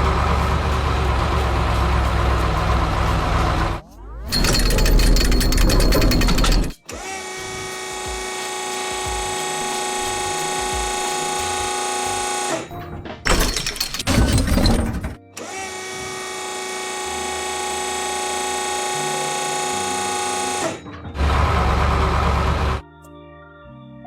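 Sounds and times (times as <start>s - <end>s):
harsh clattering: 0.0s - 6.8s, 12.7s - 15.2s
drill-like whine: 6.8s - 12.7s, 15.4s - 20.8s.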